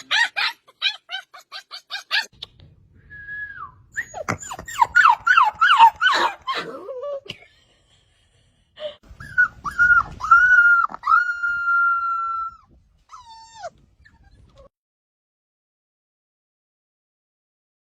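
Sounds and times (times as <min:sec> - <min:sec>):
puppy whining: 0:00.0 - 0:02.5, 0:03.6 - 0:07.2, 0:09.1 - 0:14.7.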